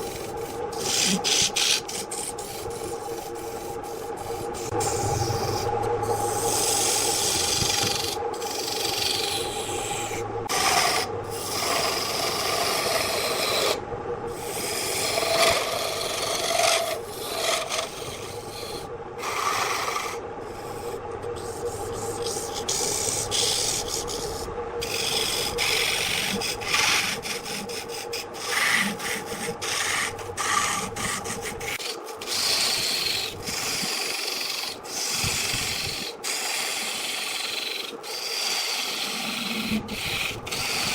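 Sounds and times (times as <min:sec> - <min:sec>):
tool scraping spinning wood: 0:00.0 - 0:40.9
wood lathe humming: 0:00.0 - 0:40.9.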